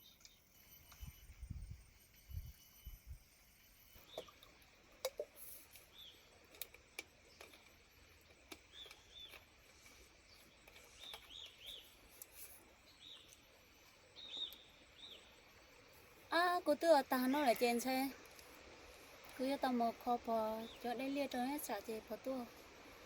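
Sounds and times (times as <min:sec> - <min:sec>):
faint bird chirps: 0:08.7 - 0:15.9.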